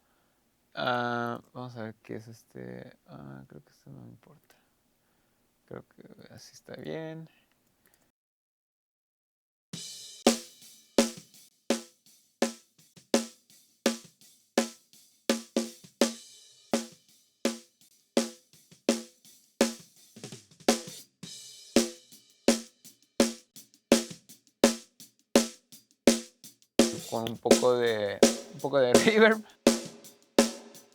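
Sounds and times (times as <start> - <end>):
snare drum beat: 10.2 - 12.6, 13.2 - 16.2, 16.8 - 30.9
cymbals washing: 26.8 - 30.9.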